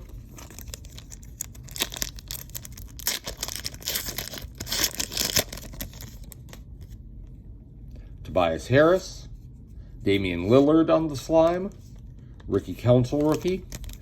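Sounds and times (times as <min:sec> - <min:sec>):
card pack wrapper tearing: 0:00.1 - 0:06.6, 0:13.0 - 0:14.0
wrapper crinkling: 0:00.1 - 0:06.6, 0:13.0 - 0:14.0.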